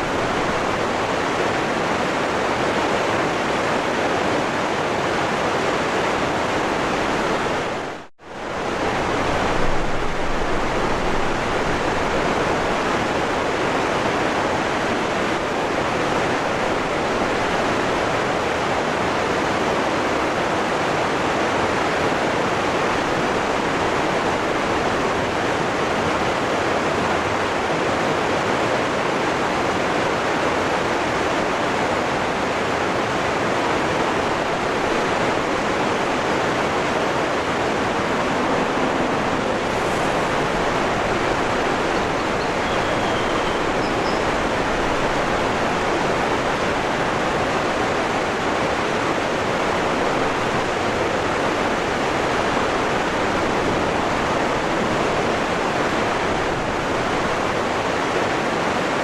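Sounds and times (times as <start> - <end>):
waterfall roaring: 0.0 - 59.0.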